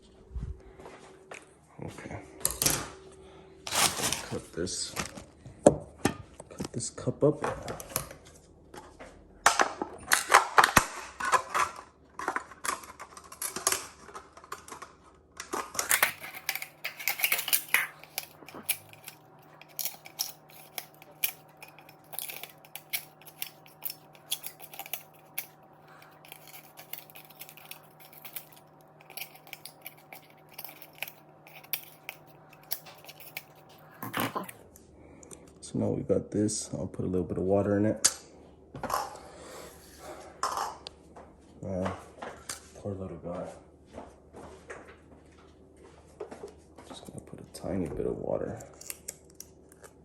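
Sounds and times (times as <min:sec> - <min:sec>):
scissors snipping a cup: 0:15.8 - 0:34.5.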